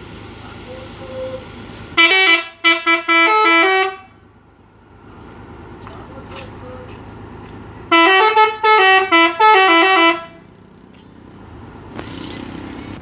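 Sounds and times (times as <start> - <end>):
background traffic noise: 0.0 - 13.0
bus musical horn tune: 0.6 - 4.2, 7.9 - 10.4.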